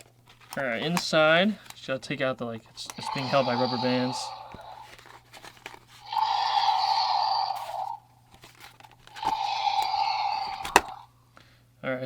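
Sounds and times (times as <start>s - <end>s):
plastic packaging crinkling: 0.0s - 11.0s
sharp plastic click: 10.5s - 11.0s.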